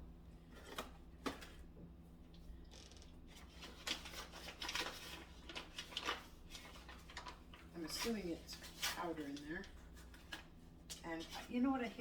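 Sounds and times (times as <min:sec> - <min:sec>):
packaging rustling: 0:03.4 - 0:10.5.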